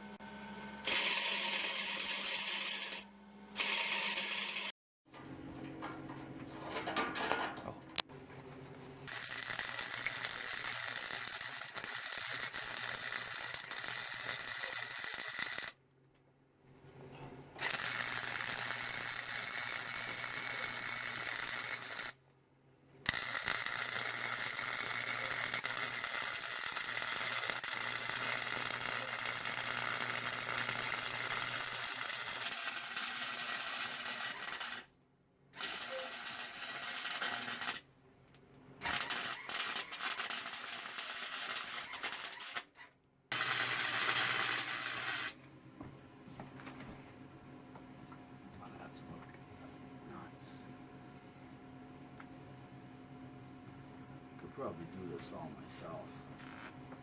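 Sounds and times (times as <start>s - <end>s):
faint welder hum: 0.0s - 4.7s, 9.0s - 15.8s, 17.6s - 22.2s, 23.0s - 35.0s, 35.6s - 45.6s
welder crackling sizzle: 0.0s - 4.7s, 9.1s - 15.7s, 17.6s - 22.1s, 23.1s - 34.9s, 35.6s - 37.8s, 38.8s - 42.5s, 43.3s - 45.4s.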